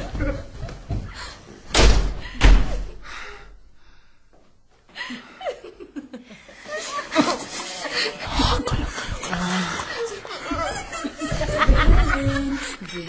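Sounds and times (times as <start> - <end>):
heavy slams: 1.7 - 3.0.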